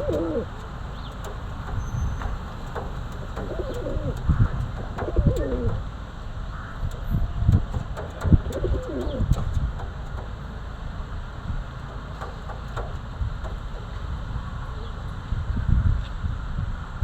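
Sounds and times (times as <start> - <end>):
pigeon cooing: 0.0 - 0.6, 3.1 - 5.8, 8.1 - 9.6
low thuds and rumbling: 1.1 - 14.5.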